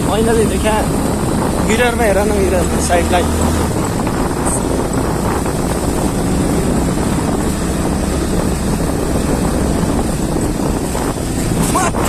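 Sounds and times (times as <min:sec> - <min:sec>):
motorcycle riding: 0:00.0 - 0:12.0
wind rumble on microphone: 0:00.0 - 0:12.0.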